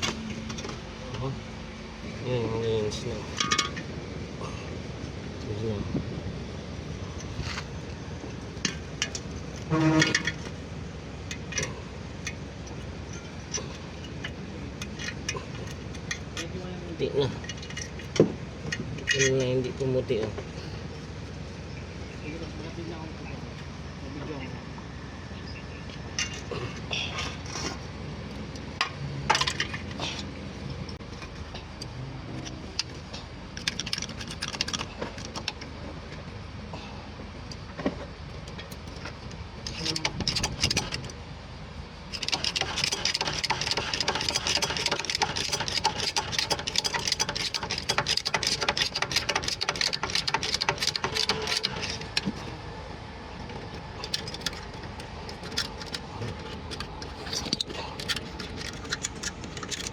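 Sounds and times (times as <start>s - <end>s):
hand tools clinking on metal: 3.2s - 3.9s, 42.1s - 52.4s, 53.7s - 59.9s
power tool rattling: 42.1s - 52.4s.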